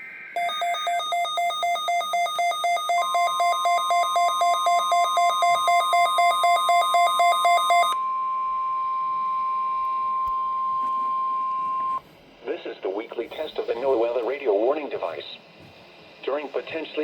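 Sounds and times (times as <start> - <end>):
two-pitch electronic beeping: 0.4 - 8.0
steady alarm tone: 0.4 - 12.0.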